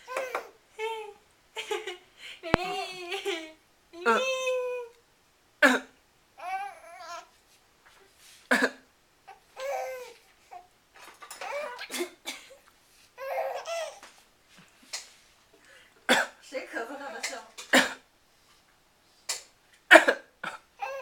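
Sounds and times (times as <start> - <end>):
man coughing: 17.7 - 18.0, 19.9 - 20.7.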